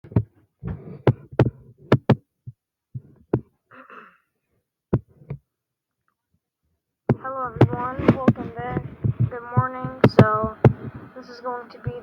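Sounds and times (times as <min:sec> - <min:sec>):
sharp knocks and thumps: 0:00.0 - 0:03.5, 0:04.9 - 0:05.4, 0:07.1 - 0:11.1.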